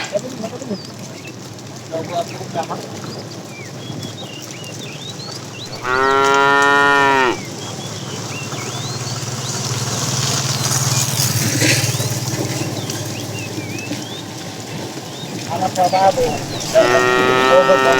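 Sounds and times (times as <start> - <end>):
cow mooing: 5.6 - 7.5, 15.8 - 17.9.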